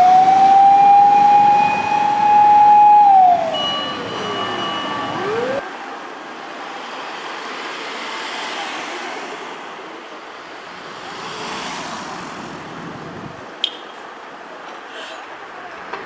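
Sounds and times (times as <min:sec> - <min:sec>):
fire engine siren winding up: 0:00.0 - 0:05.6
road traffic: 0:00.0 - 0:16.0.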